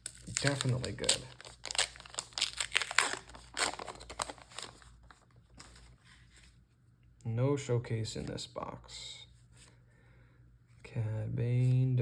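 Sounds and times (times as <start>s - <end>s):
foil wrapper crinkling and tearing: 0.0s - 5.2s.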